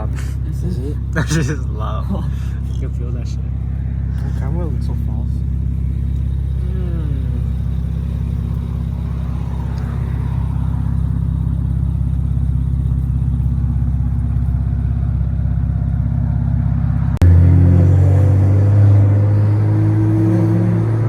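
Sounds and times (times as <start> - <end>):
car exhaust droning: 0.0 - 21.0.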